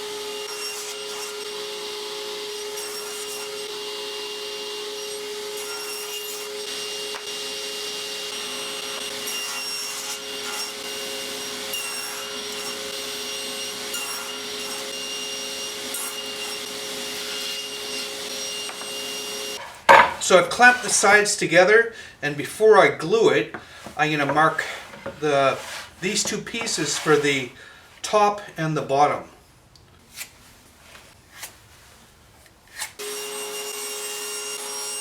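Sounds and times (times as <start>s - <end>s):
table saw cutting wood: 0.0s - 21.2s, 32.8s - 35.0s.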